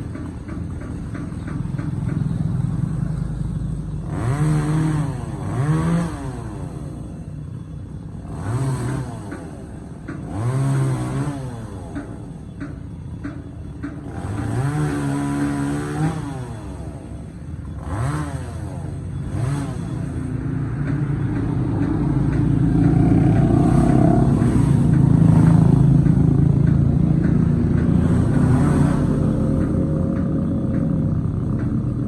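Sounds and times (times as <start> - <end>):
chainsaw revving: 4.0 - 7.0, 8.2 - 12.0, 14.0 - 32.0.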